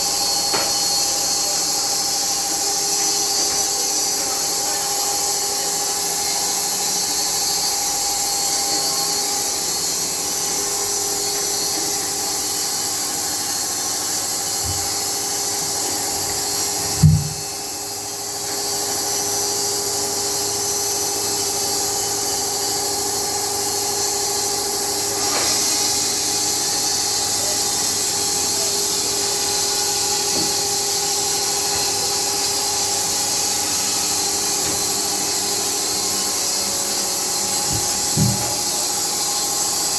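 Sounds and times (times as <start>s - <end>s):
sawmill whine and hiss: 0.0s - 39.9s
single thump: 17.0s - 17.4s.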